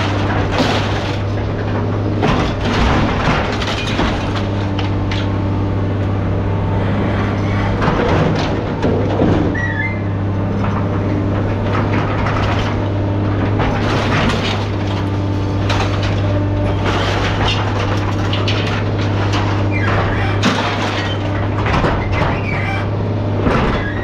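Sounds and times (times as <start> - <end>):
scrap metal clanking: 0.0 - 5.4, 10.7 - 22.8
diesel engine running: 0.0 - 24.0.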